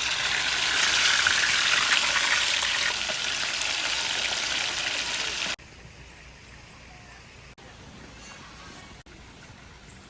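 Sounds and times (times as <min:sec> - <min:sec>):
food sizzling in hot oil: 0:00.0 - 0:05.6.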